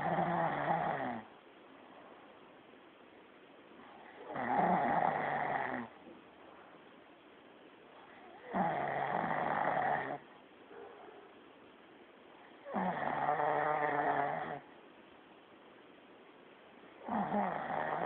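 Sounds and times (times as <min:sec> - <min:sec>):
quiet breathing: 0:01.0 - 0:02.6, 0:03.2 - 0:07.2, 0:07.8 - 0:11.4
man snoring loudly: 0:04.3 - 0:05.9, 0:08.5 - 0:10.2, 0:12.7 - 0:14.6, 0:17.1 - 0:18.0.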